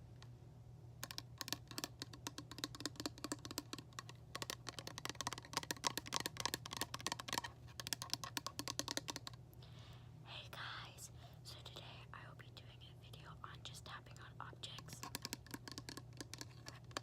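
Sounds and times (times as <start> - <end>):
fast tapping on hard object: 1.0 - 9.4, 14.8 - 17.0.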